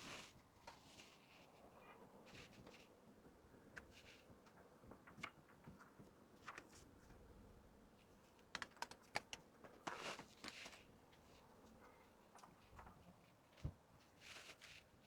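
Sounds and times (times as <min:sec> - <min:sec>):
clicks and taps of merchandise: 0:08.4 - 0:10.8.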